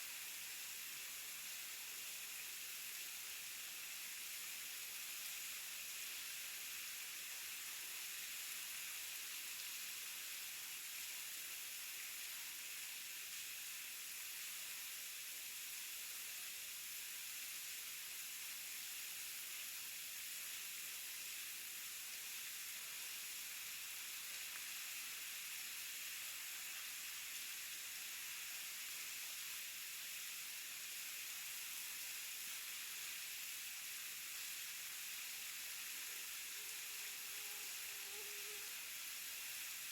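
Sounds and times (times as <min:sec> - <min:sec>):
waterfall hissing: 0:19.5 - 0:39.9.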